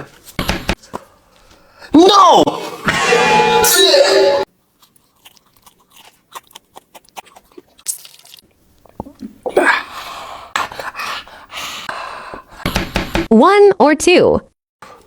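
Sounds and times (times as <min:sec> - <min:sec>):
crunchy food being chewed: 0:04.7 - 0:09.2.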